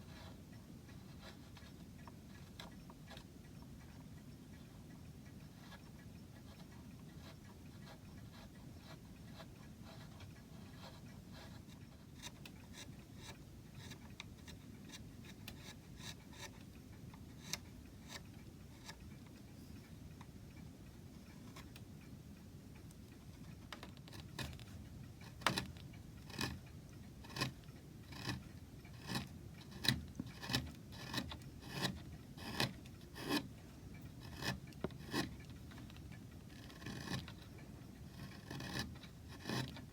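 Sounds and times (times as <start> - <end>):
chisel cutting into wood: 27.3 - 28.4, 29.0 - 33.5, 34.2 - 35.4, 36.6 - 37.3, 38.1 - 39.9.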